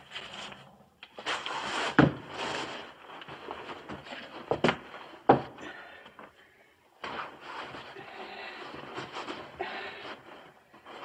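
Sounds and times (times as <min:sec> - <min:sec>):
footsteps on wooden floorboards: 0:03.8 - 0:05.6.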